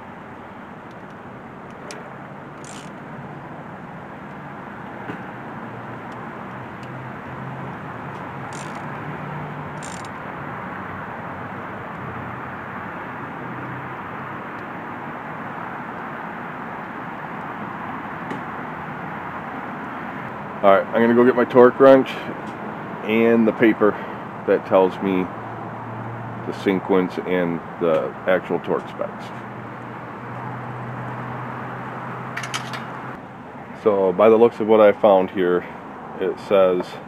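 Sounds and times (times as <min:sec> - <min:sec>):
rushing outdoor noise: 0:00.0 - 0:37.0.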